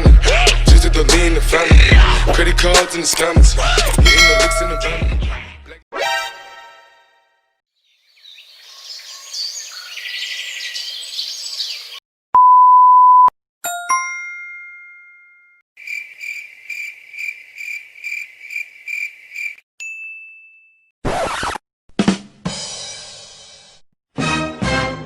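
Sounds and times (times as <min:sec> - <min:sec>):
bright ding: 0:04.1 - 0:04.9, 0:13.7 - 0:15.6.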